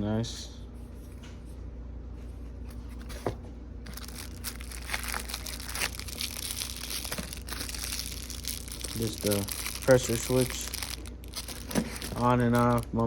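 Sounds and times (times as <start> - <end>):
low steady hum: 0.0 - 13.0
packaging crinkling: 3.8 - 13.0.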